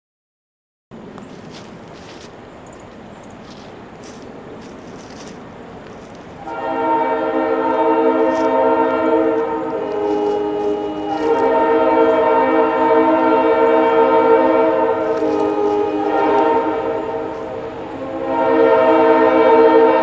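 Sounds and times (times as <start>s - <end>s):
locomotive air horn blasts: 6.4s - 20.0s.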